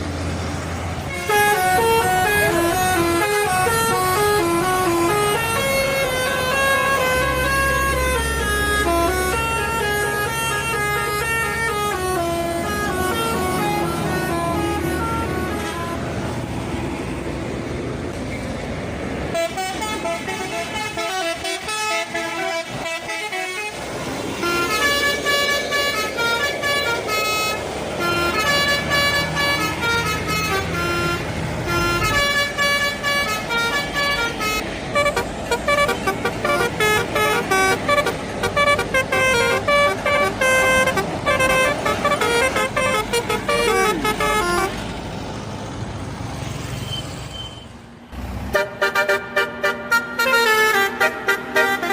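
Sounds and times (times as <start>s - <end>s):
road and engine noise: 0.0s - 51.9s
multi-tone bus air horns: 0.8s - 16.4s, 19.3s - 45.0s, 48.4s - 51.9s.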